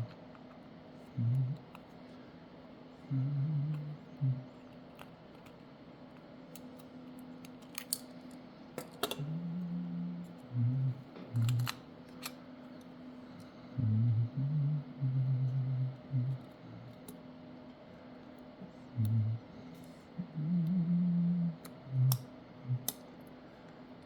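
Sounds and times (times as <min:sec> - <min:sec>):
sharp small clicks and snaps: 0:06.5 - 0:09.2, 0:11.4 - 0:12.4.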